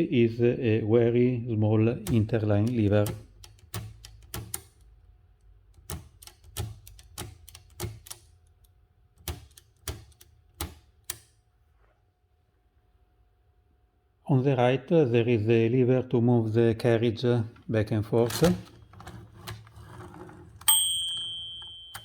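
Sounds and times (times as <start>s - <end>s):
typewriter mechanism clicking: 2.0s - 4.9s, 5.7s - 11.4s, 18.2s - 22.0s.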